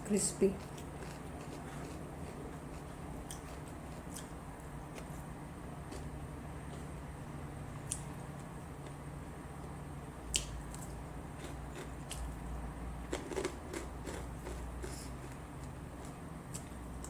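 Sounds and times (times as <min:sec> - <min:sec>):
low steady hum: 0:00.0 - 0:17.0
chewing crispy fried fish: 0:00.6 - 0:07.0, 0:10.3 - 0:17.0.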